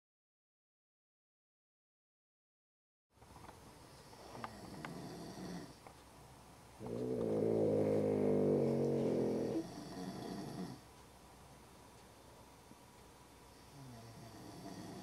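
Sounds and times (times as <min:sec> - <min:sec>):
snoring: 0:04.2 - 0:05.8, 0:06.8 - 0:10.8, 0:13.6 - 0:15.0.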